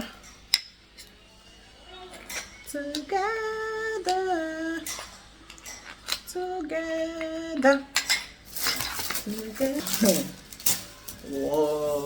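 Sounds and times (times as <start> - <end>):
woman singing without words: 2.6 - 5.4, 6.1 - 8.2, 9.2 - 10.4
clatter of things being handled: 8.0 - 12.0.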